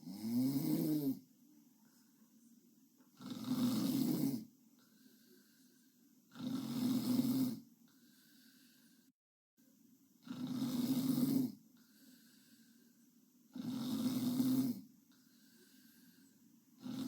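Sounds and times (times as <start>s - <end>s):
girl snoring: 0.0s - 1.2s, 3.2s - 4.5s, 6.3s - 7.7s, 10.2s - 11.6s, 13.5s - 16.2s, 16.8s - 17.0s.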